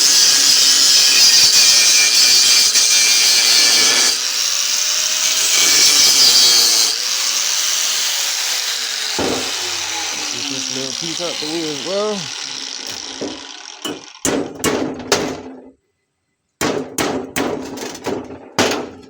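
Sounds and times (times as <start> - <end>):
angle grinder cutting steel: 0.0 - 14.2.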